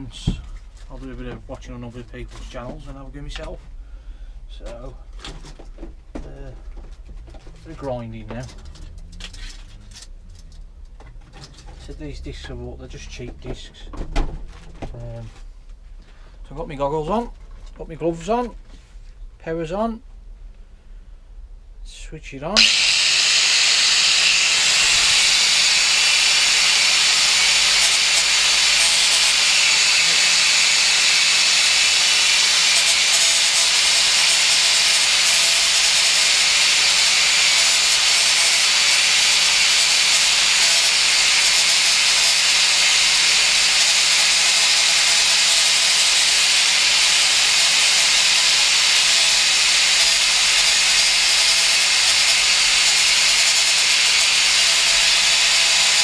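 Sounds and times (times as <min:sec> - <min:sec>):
angle grinder grinding steel pipe: 0:22.6 - 0:56.0.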